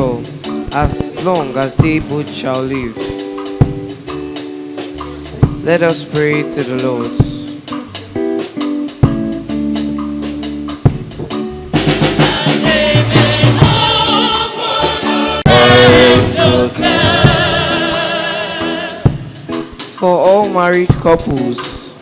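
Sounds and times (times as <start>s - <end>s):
instruments and drum kit: 0.0s - 22.0s
choir singing: 12.0s - 19.4s.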